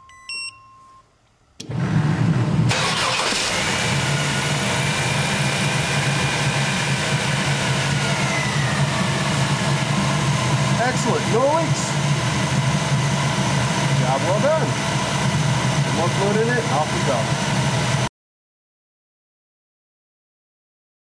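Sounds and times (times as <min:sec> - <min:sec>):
short electronic beep: 0:00.0 - 0:01.0
car engine starting and idling: 0:01.5 - 0:18.1.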